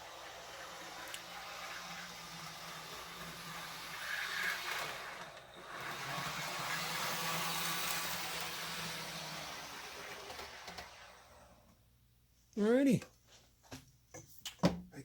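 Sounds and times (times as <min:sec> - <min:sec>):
model train motor whirring: 0:00.0 - 0:11.7.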